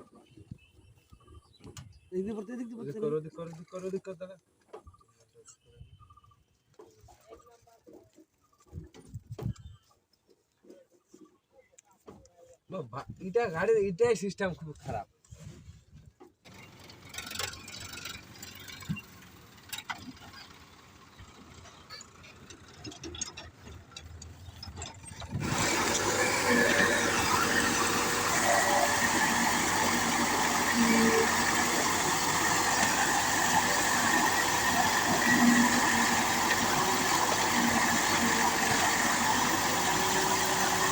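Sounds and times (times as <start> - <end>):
backhoe engine and hydraulics: 15.5 - 40.9.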